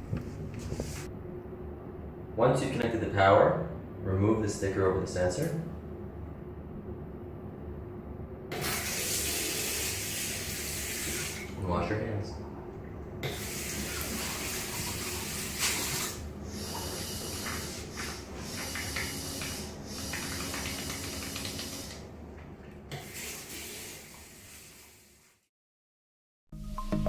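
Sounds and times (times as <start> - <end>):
water running from faucet: 8.6 - 11.6, 13.2 - 21.9, 23.0 - 25.3
hands washing under water: 13.2 - 21.8.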